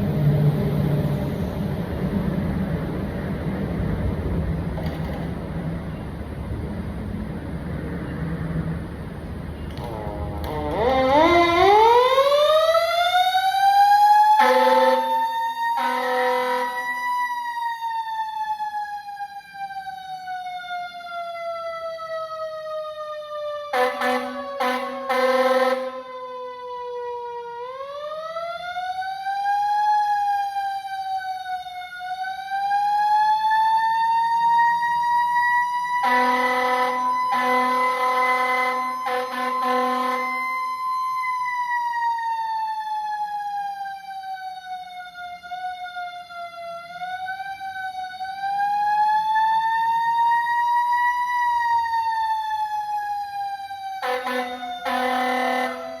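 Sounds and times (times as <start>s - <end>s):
fire truck siren wailing: 0.0s - 56.0s
fire truck horn blast: 14.4s - 17.0s, 23.7s - 26.1s, 36.0s - 40.5s, 54.0s - 56.0s.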